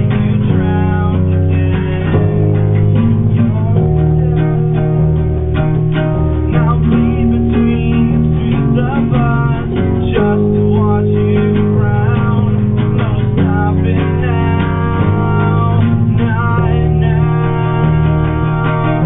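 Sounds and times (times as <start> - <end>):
bass guitar notes: 0.0 - 19.0.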